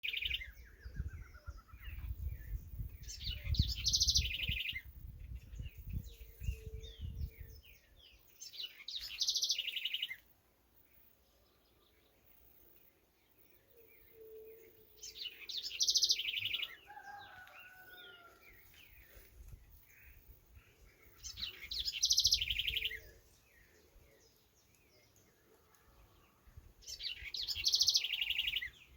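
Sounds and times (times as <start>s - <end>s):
bird trilling song: 0.0s - 10.2s, 13.3s - 18.3s, 19.9s - 25.2s, 26.8s - 28.9s
birds chirping faintly: 0.0s - 28.9s.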